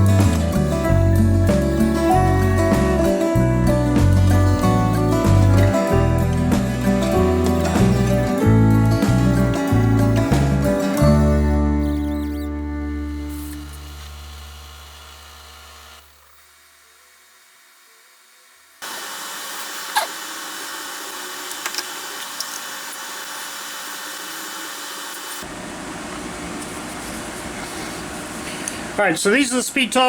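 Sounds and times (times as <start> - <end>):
background music chord: 0.0 - 11.8
steady machine hiss: 0.0 - 12.0.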